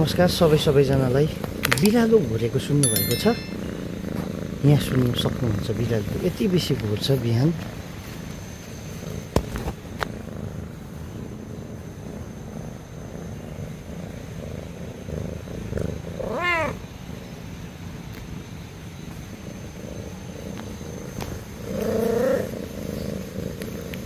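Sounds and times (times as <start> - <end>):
cat snoring: 3.6 - 6.4, 10.1 - 17.2, 19.4 - 24.0.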